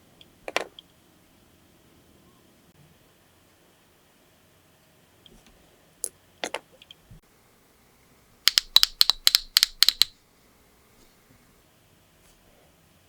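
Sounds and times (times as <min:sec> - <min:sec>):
small hard objects clicking: 0:08.5 - 0:10.1.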